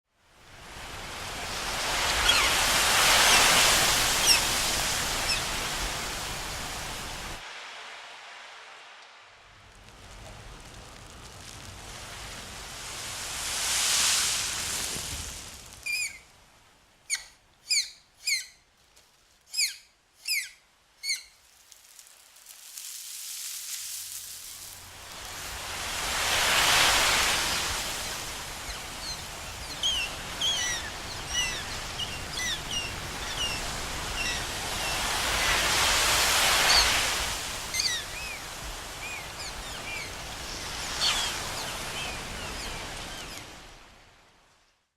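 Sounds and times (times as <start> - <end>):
sea waves washing in: 0.2 - 16.9, 21.8 - 44.6
sharp bird calls: 15.8 - 16.3, 17.1 - 18.6, 19.5 - 21.4.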